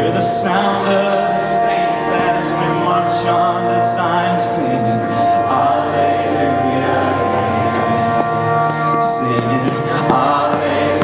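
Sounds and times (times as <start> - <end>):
rock band playing: 0.0 - 11.0
wordless sung vocals: 0.0 - 11.0.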